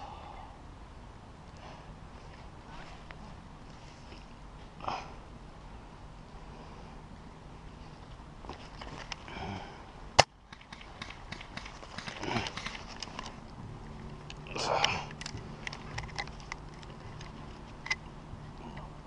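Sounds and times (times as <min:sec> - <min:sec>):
sharp snap: 0:10.2 - 0:12.9
small clicks and knocks: 0:10.5 - 0:18.1
muffled voice-like sounds: 0:14.5 - 0:15.1.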